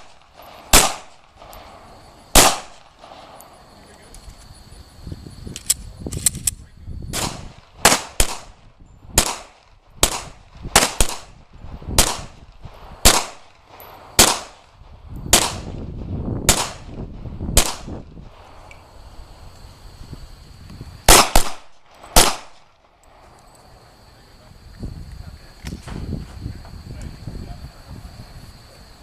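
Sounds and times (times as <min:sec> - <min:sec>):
pistol firing: 0:00.0 - 0:03.4, 0:07.1 - 0:08.6, 0:09.2 - 0:11.4, 0:12.0 - 0:15.8, 0:16.5 - 0:17.0, 0:17.6 - 0:18.0, 0:21.1 - 0:22.7.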